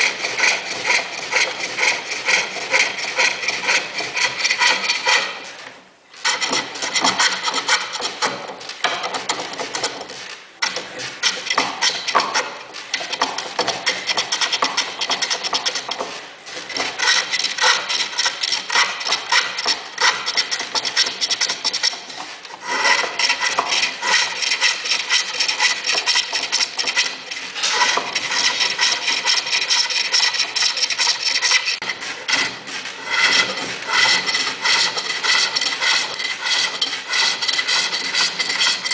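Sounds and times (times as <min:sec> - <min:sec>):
tool scraping wood on lathe: 0:00.0 - 0:38.9.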